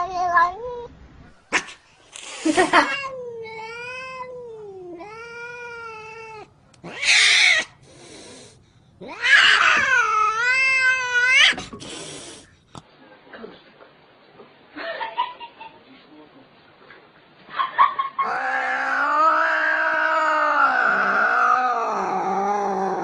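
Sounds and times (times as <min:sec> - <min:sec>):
cat yowling: 0:02.7 - 0:07.8, 0:09.0 - 0:11.6, 0:18.2 - 0:23.0.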